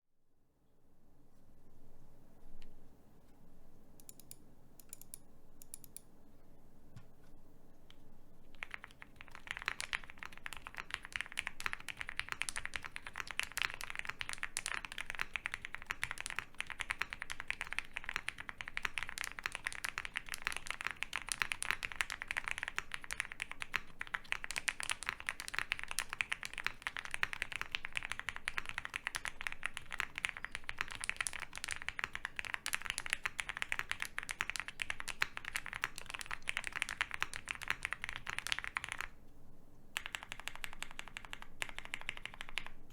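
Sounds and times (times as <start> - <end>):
fast mechanical keyboard typing: 8.4 - 39.1, 40.0 - 42.9.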